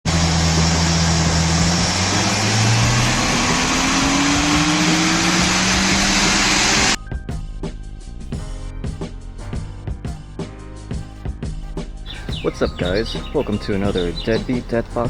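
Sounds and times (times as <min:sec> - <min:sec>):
car engine hum accelerating: 0:00.0 - 0:07.0
road and wind noise: 0:00.0 - 0:07.0, 0:12.1 - 0:15.0.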